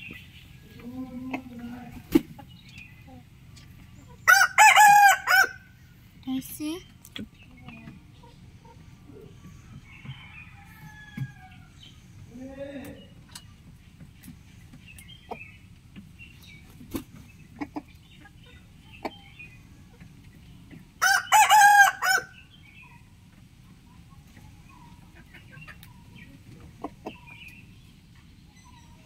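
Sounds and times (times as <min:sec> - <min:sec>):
rooster crowing: 0:04.2 - 0:05.7, 0:09.5 - 0:11.8, 0:21.0 - 0:22.4.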